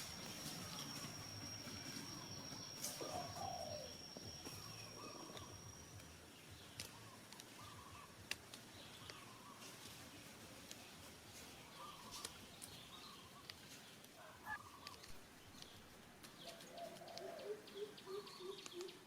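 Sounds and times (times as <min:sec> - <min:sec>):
thin high steady whine: 0:00.0 - 0:08.4
outdoor background noise: 0:00.0 - 0:19.0.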